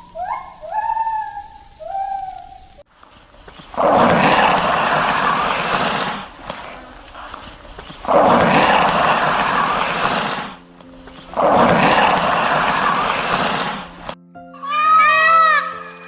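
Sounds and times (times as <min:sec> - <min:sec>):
large animal roaring: 0:03.8 - 0:06.7, 0:07.9 - 0:10.6, 0:11.3 - 0:14.2.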